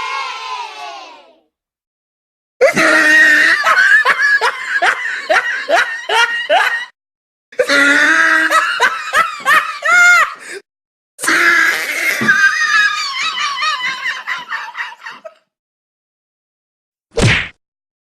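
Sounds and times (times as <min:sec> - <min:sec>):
laughter sound effect: 0:02.6 - 0:07.0, 0:07.6 - 0:10.4, 0:12.0 - 0:15.4.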